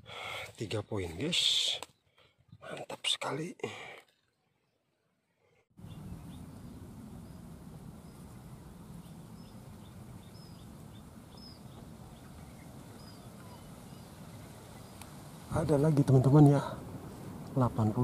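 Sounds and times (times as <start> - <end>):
small birds chirping: 5.8 - 18.0.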